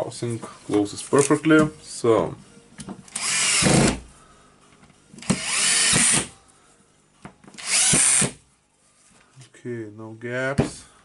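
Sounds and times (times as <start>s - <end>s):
power drill motor whirring: 3.1s - 4.0s, 5.2s - 6.3s, 7.6s - 8.4s.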